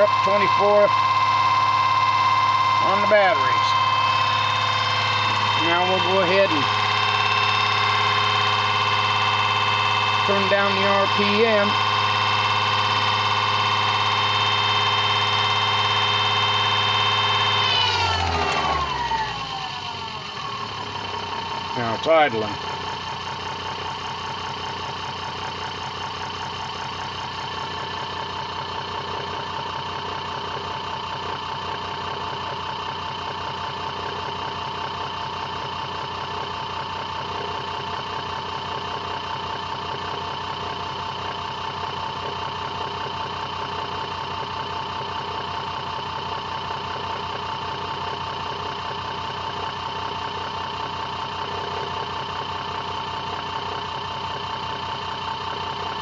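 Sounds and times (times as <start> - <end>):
fast buzzing pulse: 0.0 - 19.4
electric motor whine: 0.0 - 56.0.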